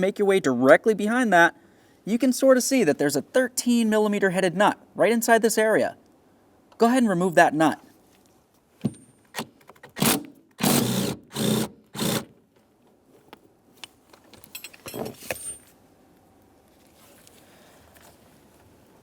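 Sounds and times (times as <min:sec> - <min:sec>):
impact wrench whirring: 0:10.0 - 0:12.3
light metallic clinks: 0:14.4 - 0:15.8.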